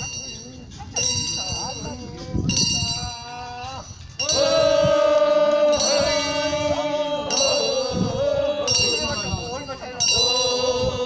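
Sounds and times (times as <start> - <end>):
hand bell ringing: 0.0 - 4.6, 5.7 - 6.6, 7.3 - 8.1, 8.7 - 10.9.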